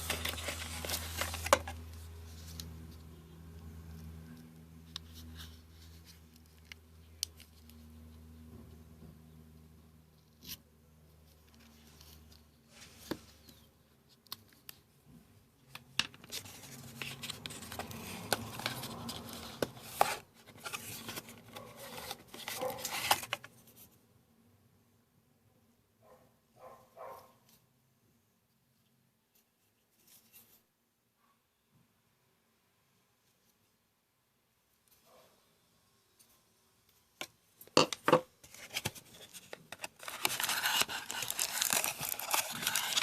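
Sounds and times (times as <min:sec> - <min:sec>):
packaging rustling and crackling: 0:00.0 - 0:01.9, 0:38.4 - 0:43.0.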